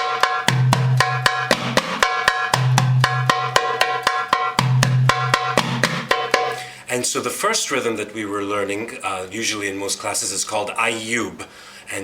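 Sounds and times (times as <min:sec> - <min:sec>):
deep hand drum strokes: 0:00.0 - 0:06.6
sharp drum rim strokes: 0:00.0 - 0:06.7.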